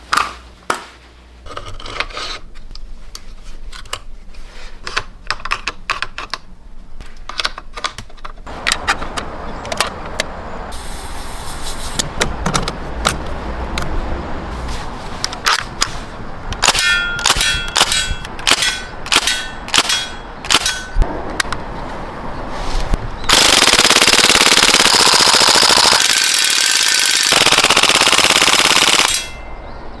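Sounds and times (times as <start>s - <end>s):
airsoft gun firing: 23.3s - 29.4s.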